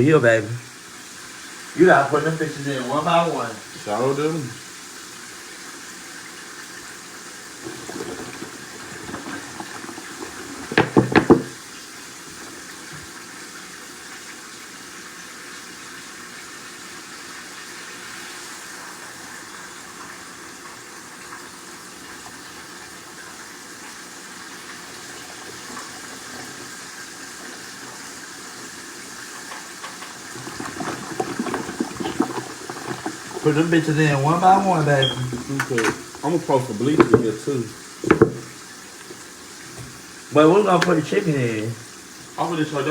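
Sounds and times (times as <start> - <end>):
food hissing in a hot pot: 0.7 - 42.9
loud clattering knocks: 7.6 - 11.6, 38.0 - 38.6.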